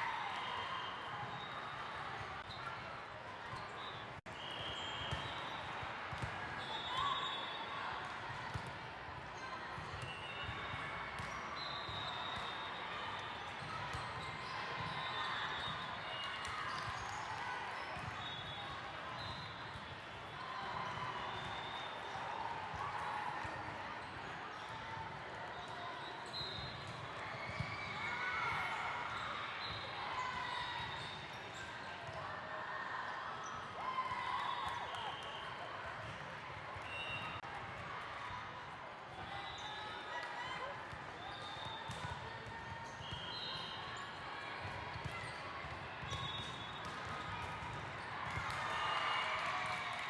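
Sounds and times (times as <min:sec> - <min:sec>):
sneaker squeaks: 0:36.8 - 0:37.4.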